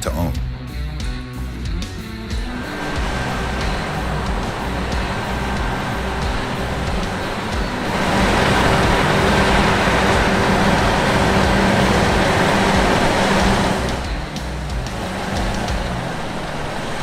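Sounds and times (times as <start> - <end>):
combine harvester running: 2.0 - 17.0.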